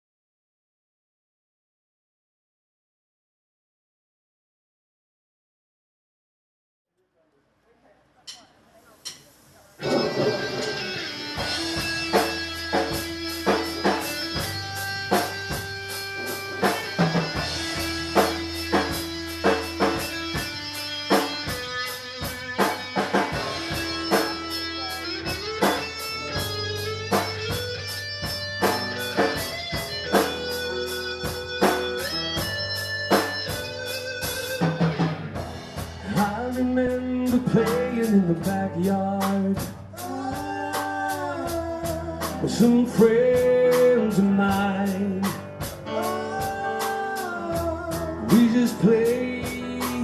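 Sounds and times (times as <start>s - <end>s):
instrumental guitar bass and drums: 9.8s - 50.0s.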